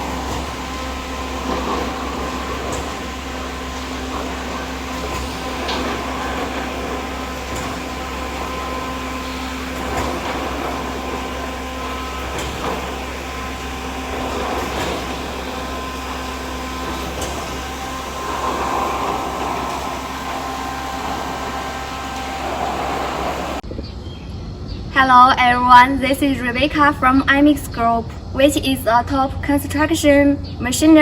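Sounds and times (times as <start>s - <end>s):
pump machinery humming: 0.0s - 23.6s.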